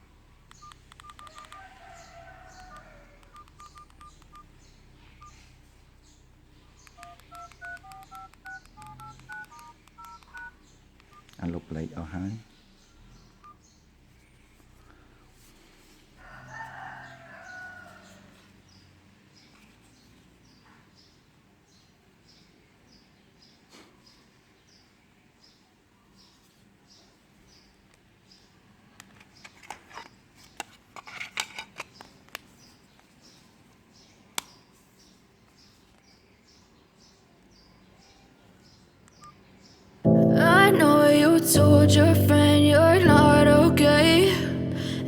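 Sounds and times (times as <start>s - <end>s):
faint high chirps: 0.0s - 13.9s
phone keypad button clicks: 0.5s - 4.5s, 6.8s - 11.5s
rooster crowing: 1.2s - 3.5s, 16.2s - 18.5s.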